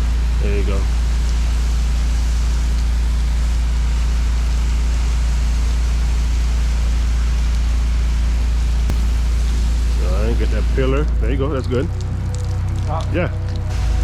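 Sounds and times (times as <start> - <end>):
pressure washer engine running: 0.0 - 12.2, 13.7 - 14.0
water spraying hiss: 8.9 - 11.7.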